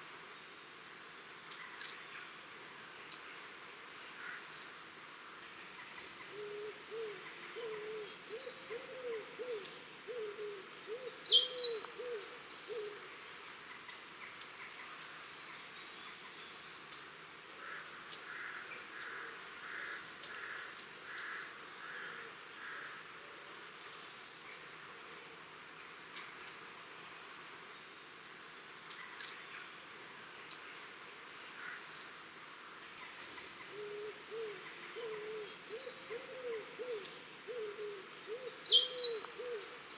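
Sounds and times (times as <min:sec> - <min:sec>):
high-pitched bird calls: 0:10.9 - 0:12.0, 0:38.2 - 0:39.6.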